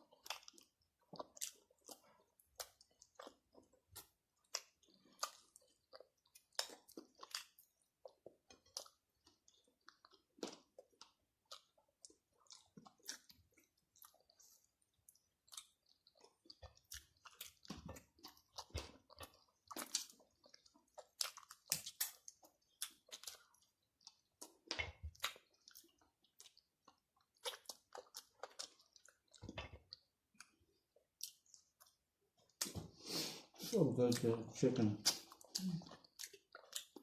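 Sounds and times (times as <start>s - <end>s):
wet chewing with mouth smacking: 0.0s - 37.0s.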